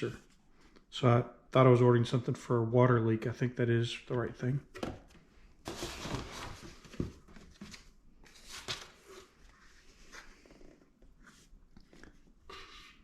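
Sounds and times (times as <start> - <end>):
packaging rustling: 5.7 - 9.3.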